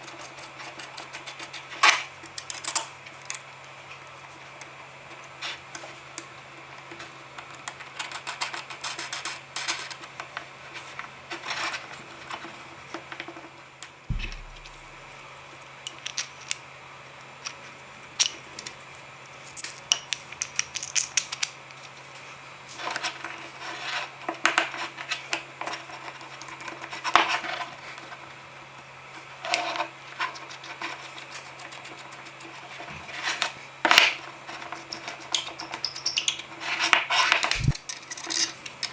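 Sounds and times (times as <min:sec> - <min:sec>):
small objects clicking and tapping: 0:14.1 - 0:15.0, 0:19.4 - 0:21.6
faint low hum: 0:14.1 - 0:15.2.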